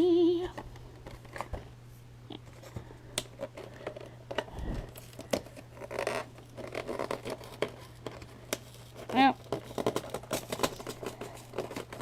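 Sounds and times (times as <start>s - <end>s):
packaging crinkling: 2.5s - 12.0s.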